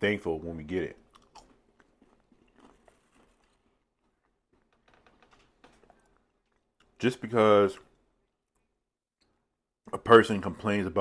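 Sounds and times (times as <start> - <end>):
faint chewing: 0.9 - 7.0.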